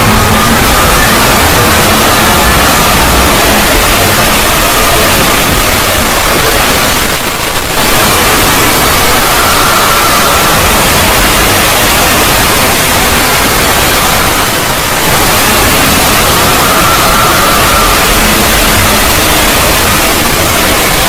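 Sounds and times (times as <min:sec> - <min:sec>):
loud static hiss: 0:00.0 - 0:21.0.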